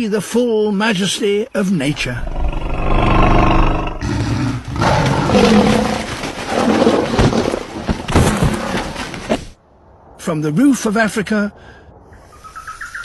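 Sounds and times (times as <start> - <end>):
big cat roaring: 1.9 - 7.4.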